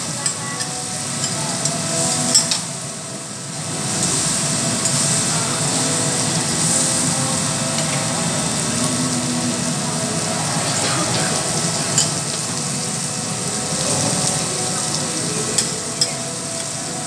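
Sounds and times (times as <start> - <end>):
food sizzling on a griddle: 0.0 - 8.2.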